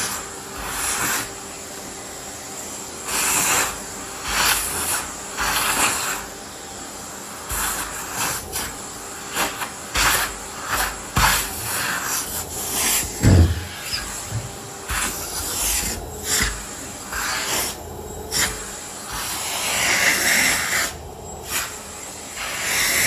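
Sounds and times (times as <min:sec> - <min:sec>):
rubbing and scraping while cleaning: 0:00.0 - 0:06.5, 0:07.3 - 0:23.0
dull thump: 0:13.2 - 0:13.7.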